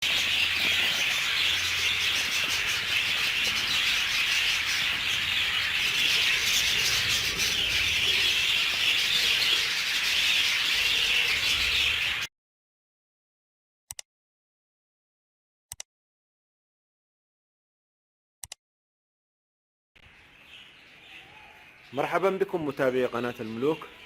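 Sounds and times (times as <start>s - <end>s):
budgerigars chattering: 0.0s - 12.3s.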